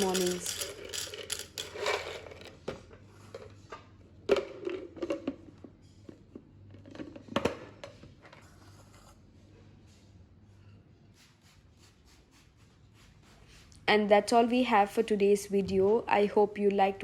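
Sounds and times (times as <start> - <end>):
utensils and containers clattering: 0.0 - 2.6.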